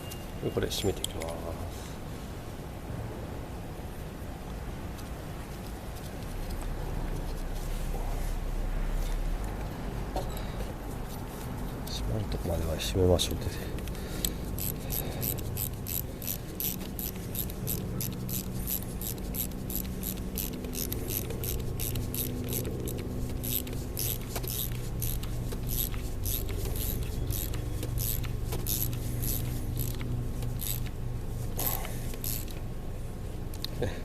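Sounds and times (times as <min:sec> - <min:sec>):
low hum: 0:05.8 - 0:12.3
ratchet wrench clicking: 0:13.8 - 0:31.0, 0:31.6 - 0:32.6.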